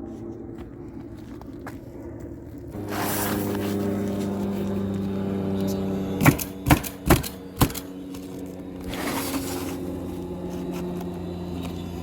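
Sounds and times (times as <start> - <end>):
steady mechanical hum: 0.0 - 12.0
nail gun firing: 6.2 - 8.0.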